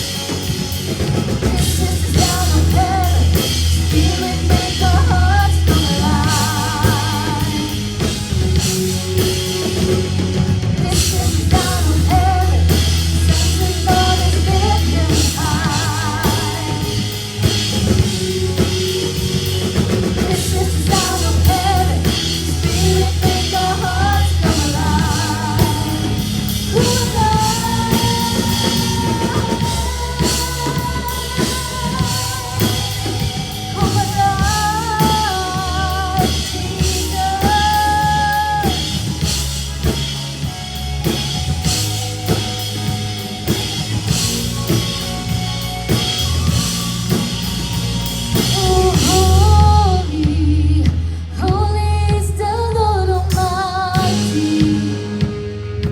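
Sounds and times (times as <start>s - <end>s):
band with drums and bass: 0.0s - 55.9s
person singing with vibrato: 0.0s - 55.9s.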